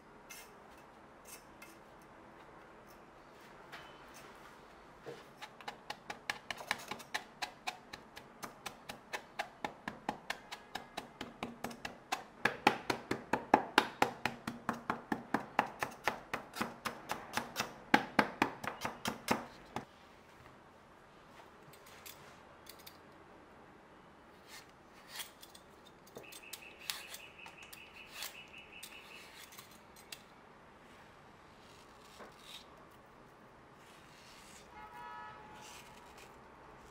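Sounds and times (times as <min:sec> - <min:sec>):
rhythmic kitchen chopping strokes: 0:05.3 - 0:19.9.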